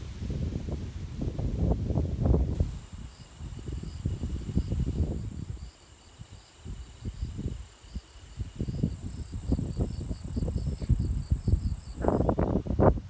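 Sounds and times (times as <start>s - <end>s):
wind buffeting microphone: 0.0s - 13.0s
insects chirping: 2.6s - 12.9s.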